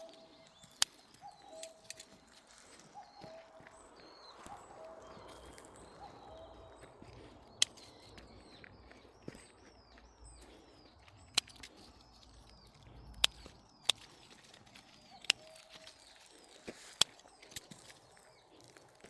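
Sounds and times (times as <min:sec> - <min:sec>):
sharp clicks: 0:00.0 - 0:02.5, 0:07.4 - 0:08.6, 0:10.3 - 0:18.9
bird singing: 0:00.0 - 0:19.0.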